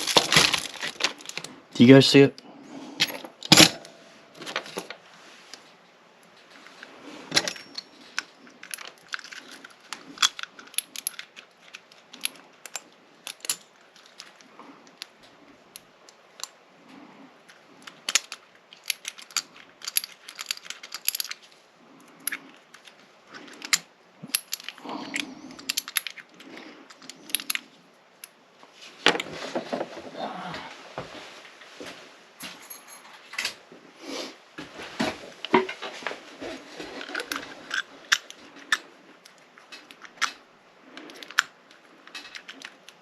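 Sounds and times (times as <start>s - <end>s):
metal parts clattering: 0.0s - 1.5s, 3.0s - 5.0s, 7.3s - 15.1s, 17.8s - 21.5s, 22.1s - 27.6s, 36.4s - 40.4s, 41.0s - 43.0s
metal lock parts clicking and rattling: 0.0s - 1.6s, 3.0s - 5.0s, 7.3s - 28.4s, 36.4s - 43.0s.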